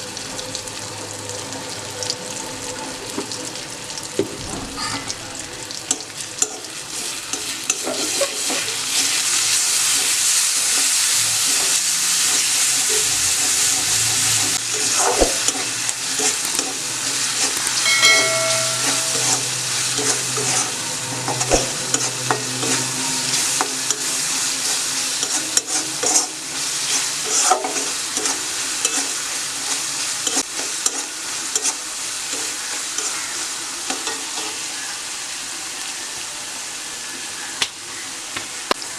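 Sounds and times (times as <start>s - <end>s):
food sizzling in oil: 0.0s - 38.9s
brief ringing tone: 17.8s - 19.8s.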